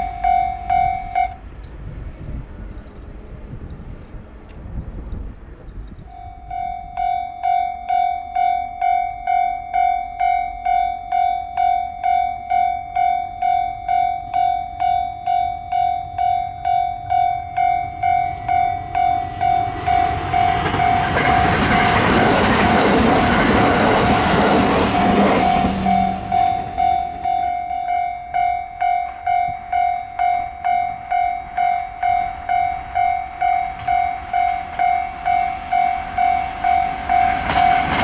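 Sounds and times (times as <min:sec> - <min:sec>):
level-crossing warning bell: 0:00.0 - 0:01.9, 0:06.0 - 0:38.0
train rushing past: 0:14.3 - 0:38.0.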